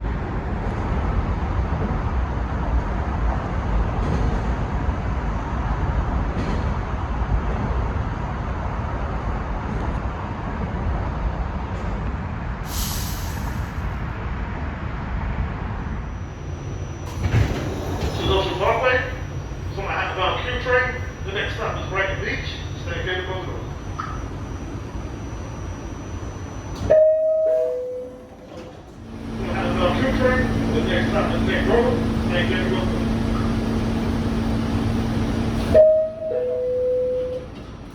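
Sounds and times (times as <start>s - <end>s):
subway car rumbling on rails: 0.0s - 37.9s
air hiss: 12.7s - 13.9s.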